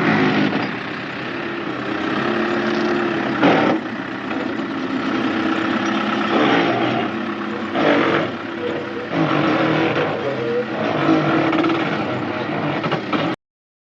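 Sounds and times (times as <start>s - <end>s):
backhoe loader diesel engine running: 0.0s - 13.4s.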